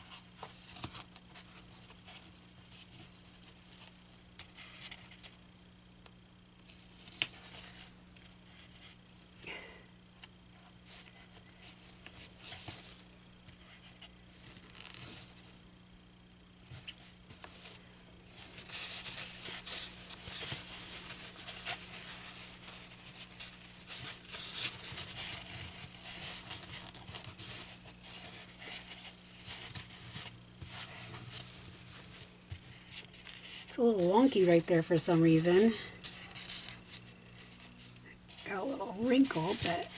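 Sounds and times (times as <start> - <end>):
fabric scratching on styrofoam: 18.4 - 39.9.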